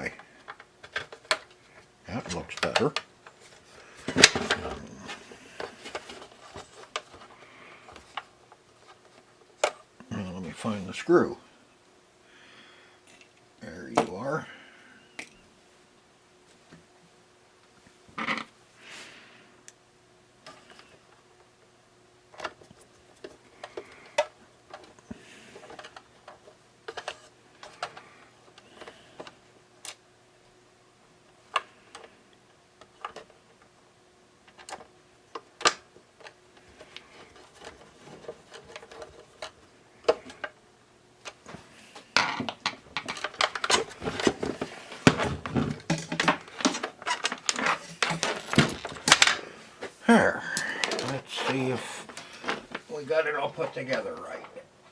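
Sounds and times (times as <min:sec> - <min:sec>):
plastic cassette player being handled: 0:02.2 - 0:08.3, 0:41.2 - 0:49.5, 0:50.8 - 0:52.9.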